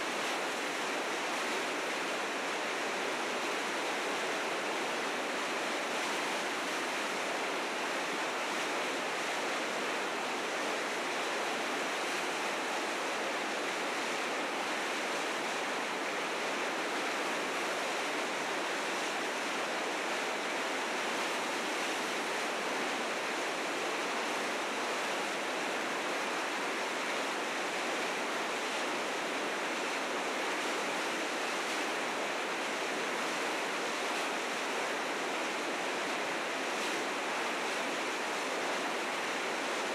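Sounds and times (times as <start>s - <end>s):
river rapids roaring: 0.0s - 39.9s.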